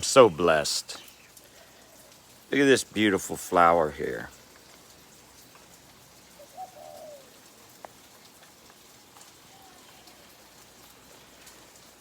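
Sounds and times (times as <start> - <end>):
light rain dripping: 0.0 - 12.0
dove cooing: 6.3 - 7.7.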